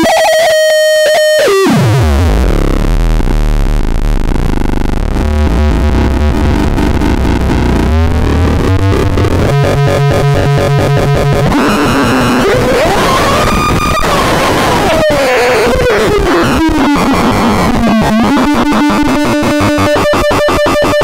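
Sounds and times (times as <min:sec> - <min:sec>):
buzzing low electronic drone: 0:01.6 - 0:21.0
fast stuttering electronic pulses: 0:04.5 - 0:21.0.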